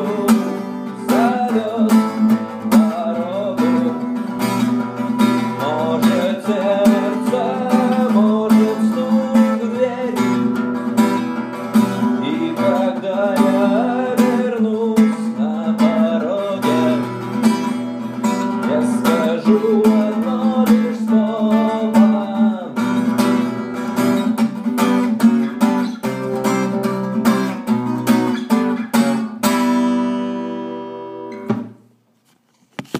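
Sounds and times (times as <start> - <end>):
acoustic guitar strumming: 0.0 - 32.0.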